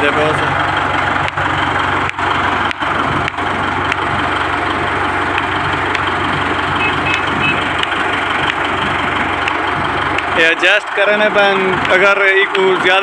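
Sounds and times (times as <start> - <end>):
diesel engine idling: 0.0 - 13.0
short high beeps: 6.8 - 7.7.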